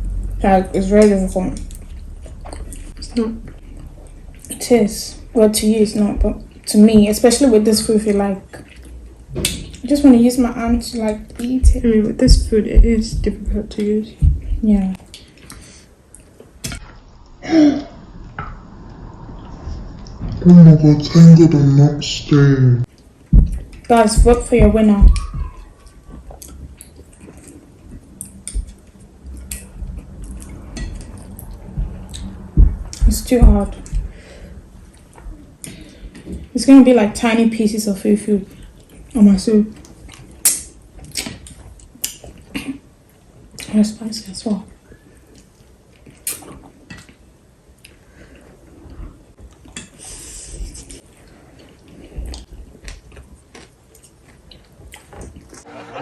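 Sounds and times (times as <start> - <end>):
soft chewing: 1.0 - 4.6, 5.2 - 16.6, 22.9 - 33.1, 33.7 - 36.6, 38.4 - 43.8, 44.7 - 55.7
soft squishy eating sounds: 1.5 - 4.6, 6.3 - 12.6, 25.1 - 33.0, 38.4 - 43.8, 44.6 - 55.6
chopsticks clicking against bowls: 28.2 - 28.8, 46.2 - 47.1
chopsticks clicking on plates: 28.2 - 32.3.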